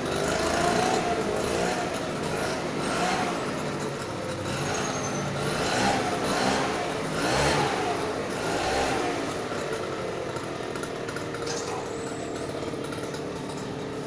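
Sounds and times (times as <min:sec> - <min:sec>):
small engine revving: 0:00.0 - 0:14.0.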